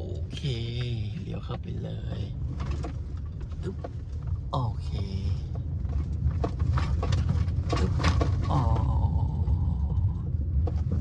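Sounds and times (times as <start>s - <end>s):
car rolling on dirt track: 0.0s - 11.0s
tyres knocking and crunching: 0.7s - 9.0s.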